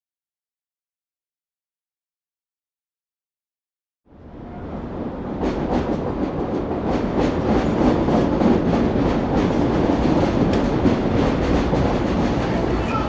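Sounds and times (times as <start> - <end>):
elevated train rumbling: 4.1 - 13.0.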